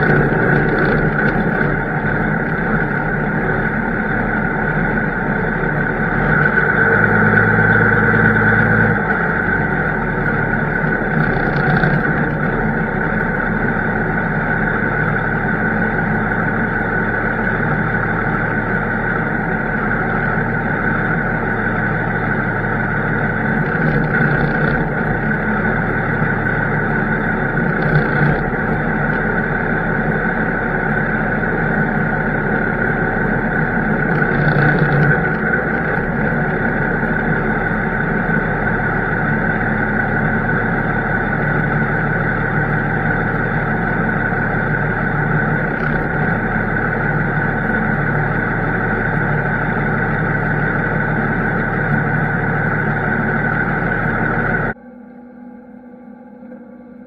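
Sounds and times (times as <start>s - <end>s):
engine drone: 0.0s - 57.0s
steady machine whine: 0.0s - 57.0s.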